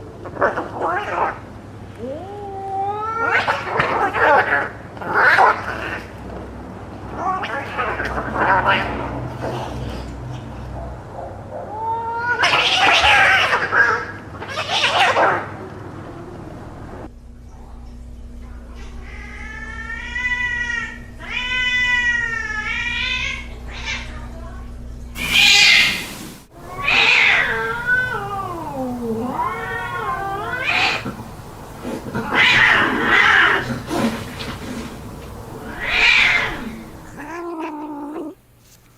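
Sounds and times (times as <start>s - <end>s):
cats yowling and screeching: 0.5s - 1.4s, 2.0s - 6.1s, 7.1s - 9.0s, 11.6s - 16.4s, 18.8s - 24.2s, 25.2s - 38.4s.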